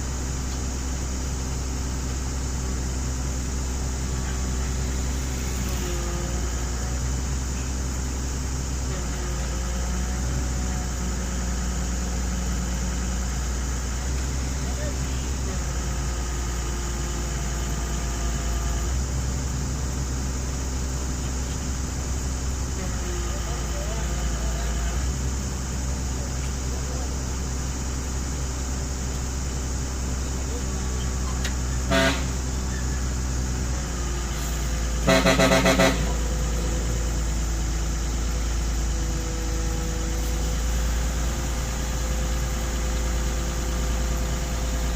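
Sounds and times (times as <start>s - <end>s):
excavator diesel engine running: 0.0s - 44.9s
faint sliding whines: 3.7s - 8.3s.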